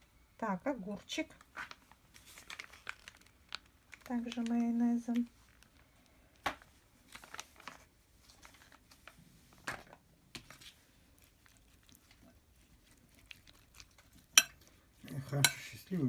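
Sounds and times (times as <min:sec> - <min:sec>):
soft crinkling: 0:01.3 - 0:15.8.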